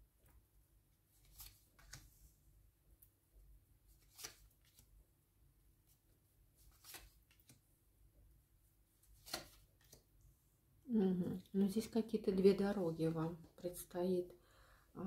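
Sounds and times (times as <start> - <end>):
cards being handled and laid down: 1.2 - 2.2, 3.9 - 4.9, 6.6 - 7.6, 9.0 - 10.1.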